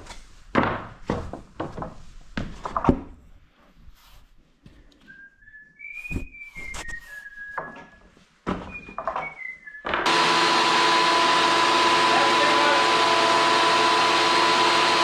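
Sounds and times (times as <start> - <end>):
person whistling a tune: 5.0 - 10.1
loud motor noise: 10.0 - 15.0.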